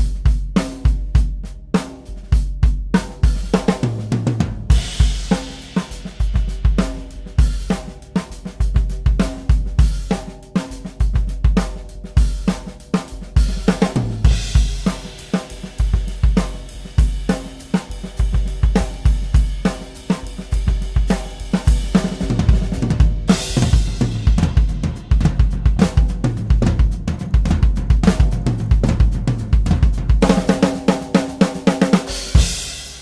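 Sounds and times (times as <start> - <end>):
drum kit groove: 0.0 - 33.0
bright cymbal wash: 4.7 - 8.6, 12.5 - 22.4, 30.4 - 33.0.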